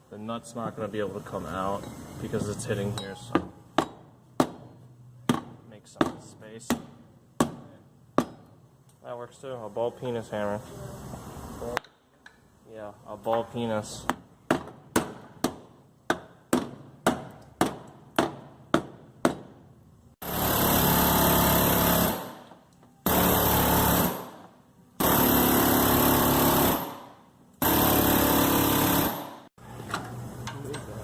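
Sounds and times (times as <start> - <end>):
hammer striking metal: 2.9 - 8.6
power tool running in bursts: 20.2 - 22.2.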